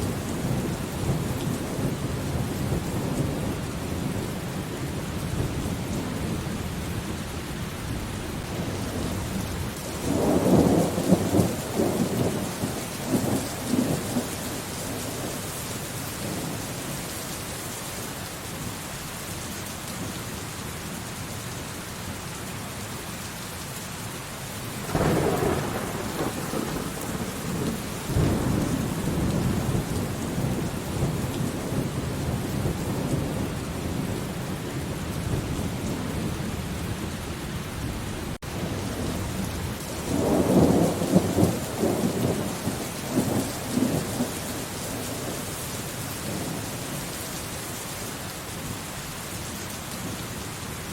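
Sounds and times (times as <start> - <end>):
steady rain falling: 0.0 - 50.9
crackling thunder peal: 24.8 - 34.2
thunder rumbling: 24.8 - 37.1, 38.4 - 45.4.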